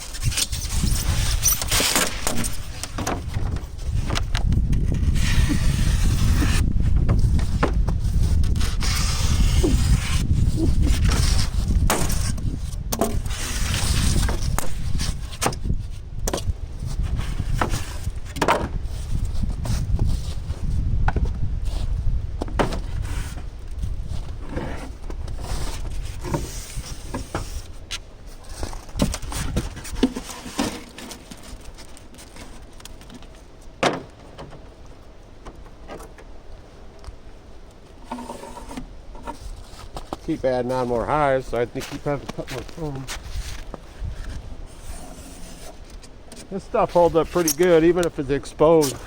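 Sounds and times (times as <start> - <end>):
wind rumble on microphone: 0.0 - 30.8, 34.5 - 49.0
foam board knocking and scraping: 0.3 - 15.7.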